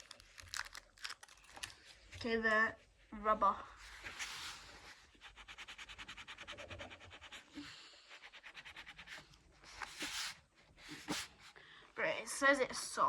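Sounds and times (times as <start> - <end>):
eraser rubbing on paper: 3.9 - 11.6.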